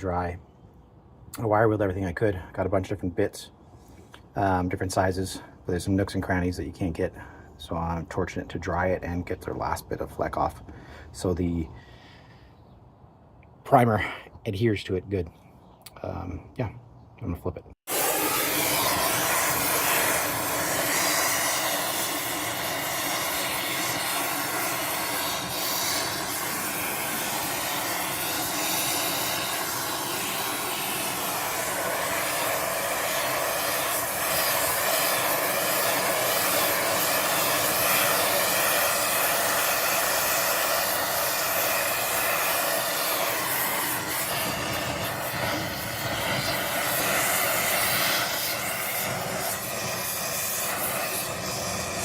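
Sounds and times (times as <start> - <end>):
hand torch flame hissing: 17.8 - 52.0.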